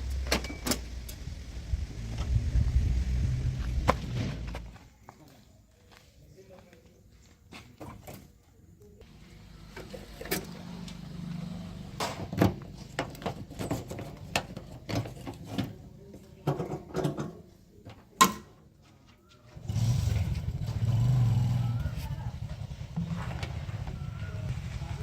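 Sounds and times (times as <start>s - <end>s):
metal knocks and clanks: 12.0s - 15.8s.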